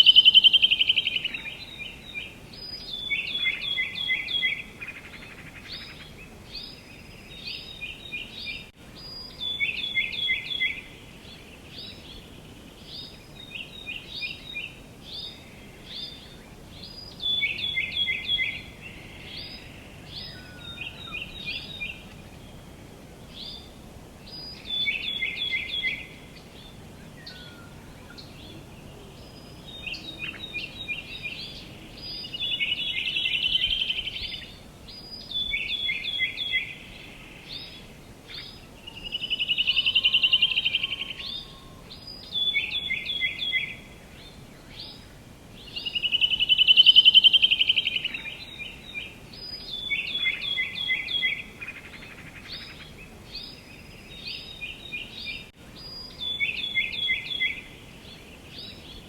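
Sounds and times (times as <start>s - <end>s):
bird trill: 0.0s - 6.1s, 38.4s - 45.0s, 45.7s - 57.8s
faint outdoor hiss: 0.0s - 59.0s
songbirds chirping: 0.0s - 59.0s.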